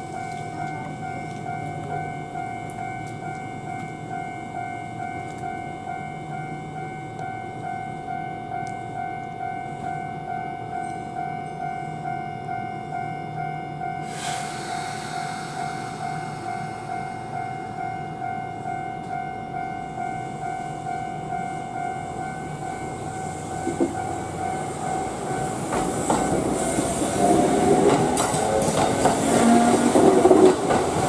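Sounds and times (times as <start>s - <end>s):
level crossing warning bell: 0.0s - 14.2s, 15.2s - 31.0s
electric train approaching: 0.0s - 31.0s
train wheels clattering: 23.6s - 31.0s.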